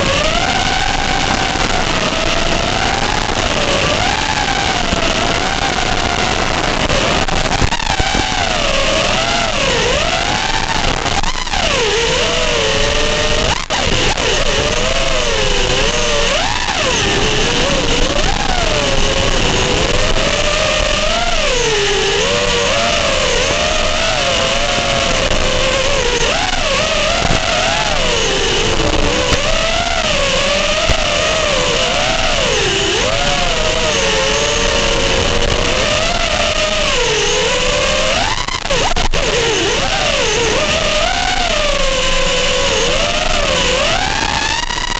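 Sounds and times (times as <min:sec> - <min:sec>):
drone motors whining: 0:00.0 - 0:44.9.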